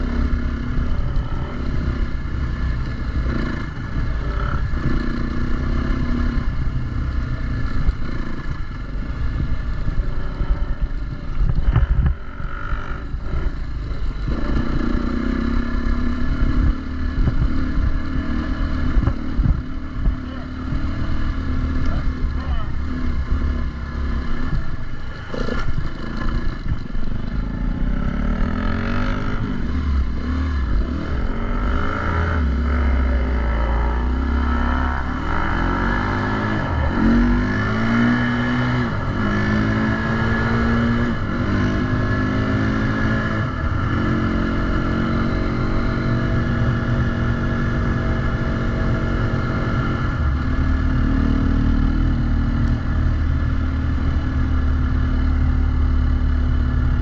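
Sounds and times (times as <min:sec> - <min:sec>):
dirt bike engine revving: 0:11.6 - 0:55.0.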